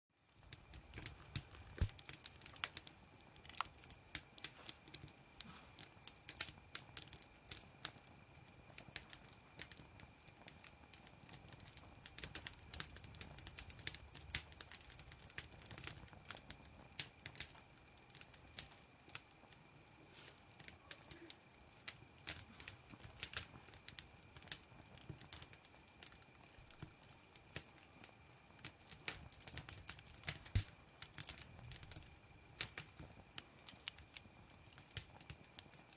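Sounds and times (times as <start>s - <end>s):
campfire crackling: 0.2s - 35.9s
faint steady hiss: 0.2s - 35.9s
sharp pops and snaps: 0.4s - 35.9s.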